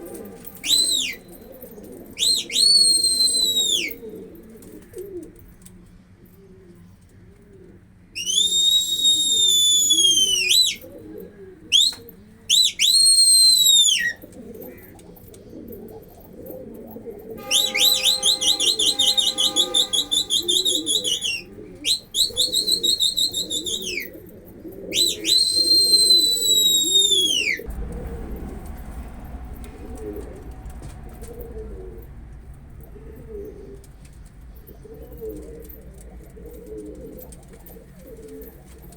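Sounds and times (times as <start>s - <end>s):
loud high whistles: 0.0s - 4.0s, 8.2s - 10.8s, 11.7s - 14.2s, 17.4s - 24.1s, 24.9s - 27.7s
pigeons cooing: 0.0s - 29.0s, 29.6s - 38.9s
low hum: 27.5s - 38.9s.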